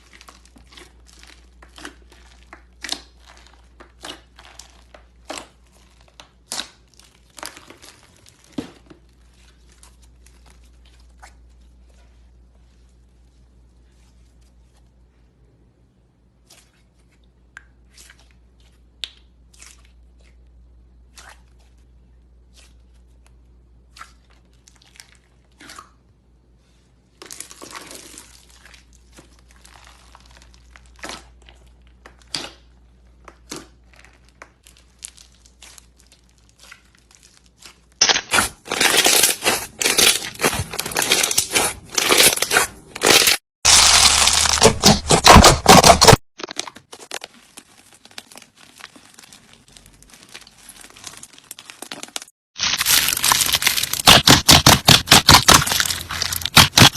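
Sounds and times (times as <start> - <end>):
slime crackling and crunching: 0.0 - 12.8, 27.2 - 56.9.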